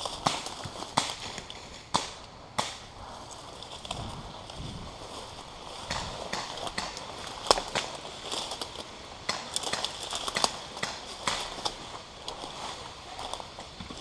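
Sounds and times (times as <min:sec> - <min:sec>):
sharp clicks and cracks: 0:00.0 - 0:02.9, 0:05.7 - 0:14.0
rustling: 0:00.0 - 0:14.0.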